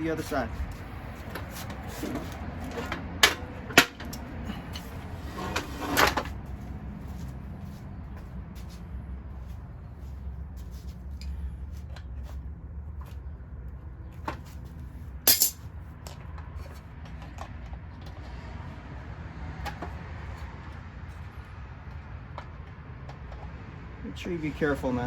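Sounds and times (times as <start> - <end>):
sharp metal clink: 15.3 - 15.6.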